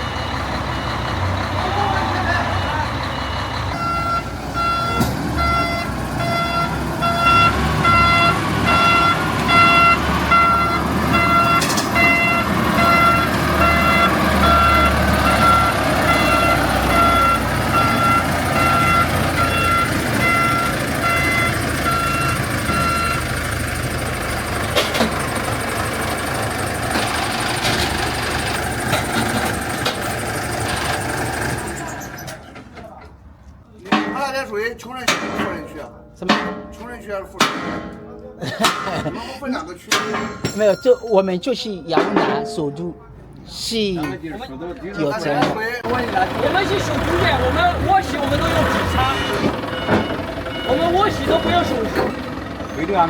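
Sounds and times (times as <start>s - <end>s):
reversing alarm beeping: 0.0s - 24.3s, 46.4s - 52.8s
diesel engine running: 0.0s - 33.0s, 45.0s - 53.0s.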